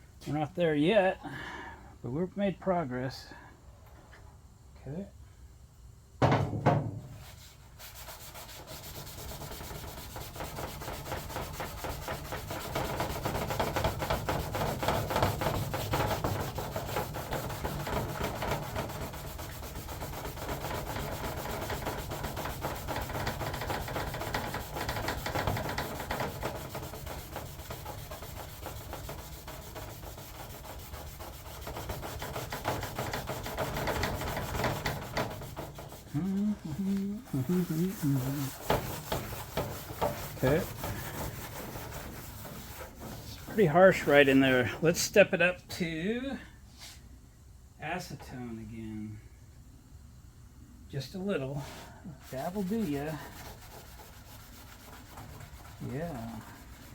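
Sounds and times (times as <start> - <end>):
sharp knocks: 6.2 - 7.1
hand scrubbing metal panel: 6.6 - 45.0, 51.6 - 56.9.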